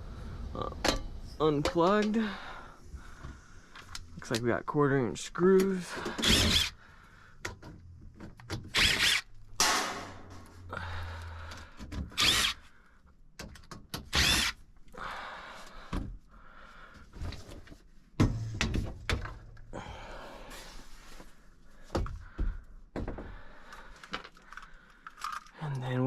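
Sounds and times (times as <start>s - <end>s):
cordless drill driving screws: 6.0s - 6.8s, 8.6s - 9.3s, 12.1s - 12.6s, 14.0s - 14.6s.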